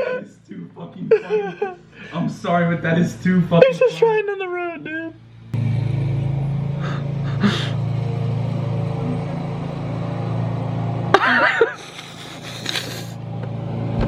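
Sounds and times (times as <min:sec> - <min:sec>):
vehicle engine drone: 0:05.0 - 0:14.0.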